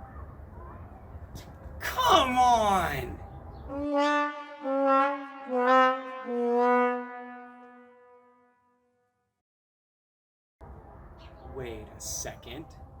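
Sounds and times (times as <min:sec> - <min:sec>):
sad trombone descending notes: 0:03.7 - 0:08.8.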